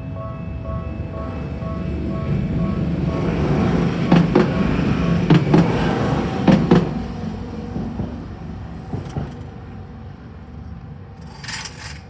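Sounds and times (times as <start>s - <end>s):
train rumble: 0.0s - 12.0s
train wheels clacking on rail joints: 1.2s - 9.6s.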